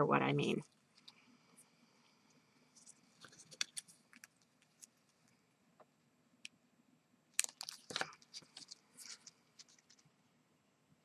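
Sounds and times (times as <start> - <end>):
paper rustling: 2.8 - 4.9, 7.4 - 10.1.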